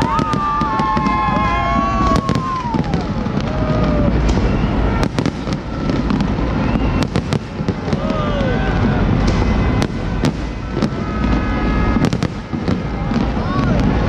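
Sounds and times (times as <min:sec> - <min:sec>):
fireworks bangs and crackling: 0:00.0 - 0:14.0
fireworks whistling: 0:00.0 - 0:14.0.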